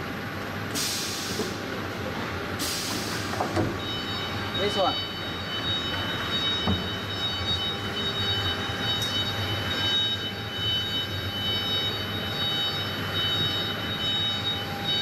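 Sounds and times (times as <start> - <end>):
workshop machinery drone: 0.0 - 15.0
high steady whine: 3.6 - 15.0.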